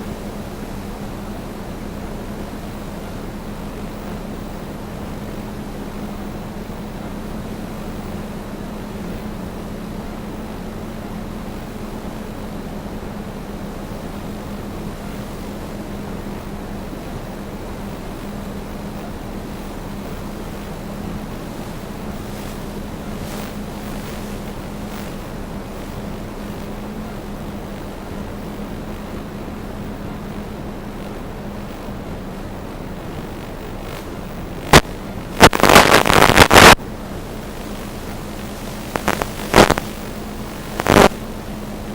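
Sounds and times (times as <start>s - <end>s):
drone propellers humming: 3.8s - 35.9s
loud crackling burst: 19.4s - 41.9s.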